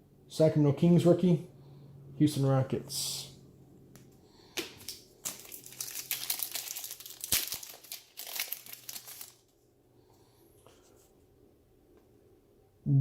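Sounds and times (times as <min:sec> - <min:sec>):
wrapper crinkling and tearing: 0:04.7 - 0:09.6.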